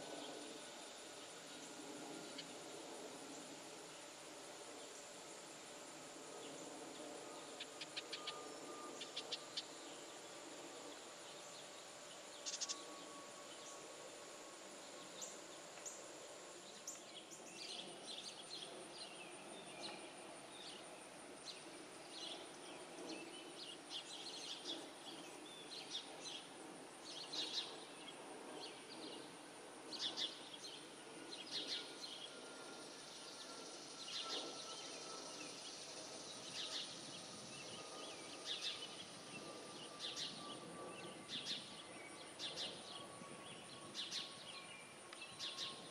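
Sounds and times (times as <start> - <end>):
insect drone: 0.0 - 45.9
small birds chirping: 10.8 - 12.9.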